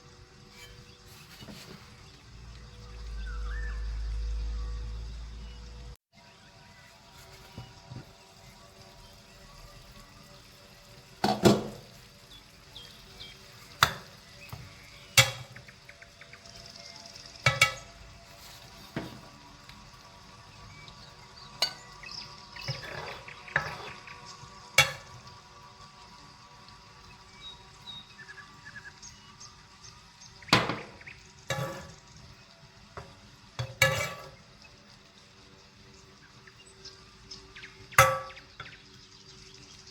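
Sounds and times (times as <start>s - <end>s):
faint music with held tones: 0.0s - 39.9s
utensils clanking against cookware: 0.4s - 2.2s, 11.2s - 19.8s, 20.7s - 26.0s, 30.4s - 35.0s, 37.9s - 39.0s.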